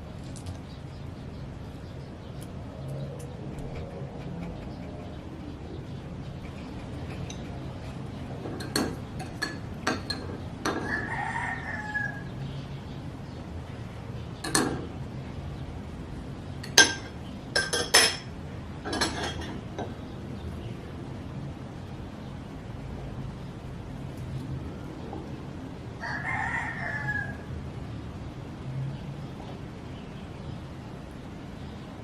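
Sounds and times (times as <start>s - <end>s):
rooster crowing: 10.7s - 12.4s, 26.0s - 27.6s
objects clinking and knocking: 16.6s - 18.3s.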